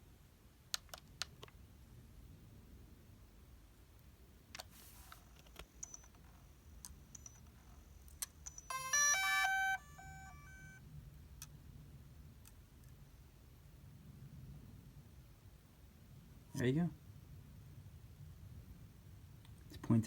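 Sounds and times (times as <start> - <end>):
drone electronic startup tune: 8.7 - 10.8.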